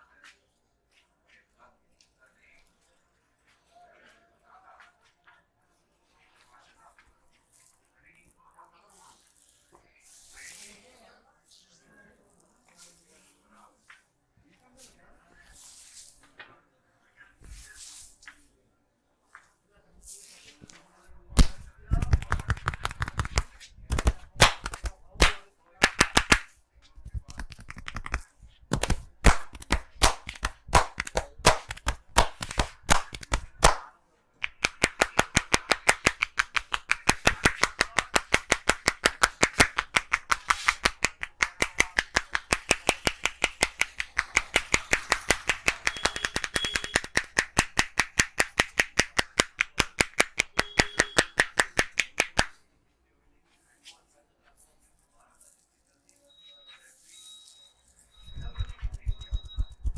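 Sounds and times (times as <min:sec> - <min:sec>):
hands slapping head and shoulders: 0:21.2 - 0:52.6, 0:58.2 - 0:59.9.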